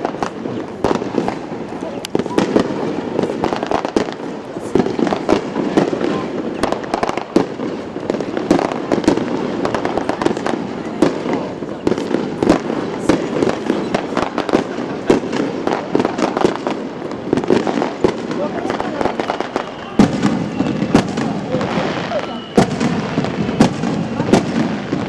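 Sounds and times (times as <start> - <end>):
fireworks bangs and crackles: 0.0 - 25.0.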